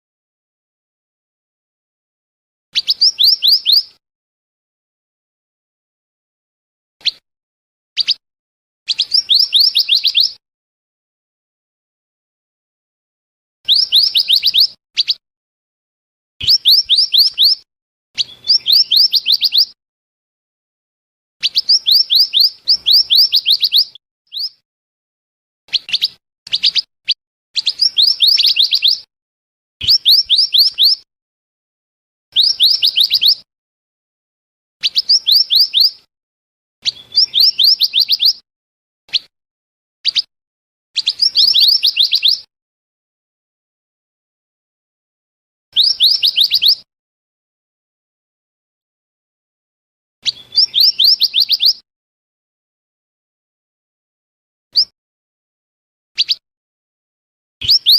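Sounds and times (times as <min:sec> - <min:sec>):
bird whistling downward notes: 0:02.8 - 0:04.0, 0:07.0 - 0:07.2, 0:08.0 - 0:08.2, 0:08.9 - 0:10.4, 0:13.7 - 0:15.2, 0:16.4 - 0:19.8, 0:21.4 - 0:24.6, 0:25.7 - 0:26.9, 0:27.6 - 0:29.1, 0:29.8 - 0:31.1, 0:32.3 - 0:33.5, 0:34.8 - 0:36.1, 0:36.8 - 0:38.4, 0:40.0 - 0:40.3, 0:41.0 - 0:42.5, 0:45.8 - 0:46.9, 0:50.2 - 0:51.8, 0:56.2 - 0:56.4, 0:57.6 - 0:57.9.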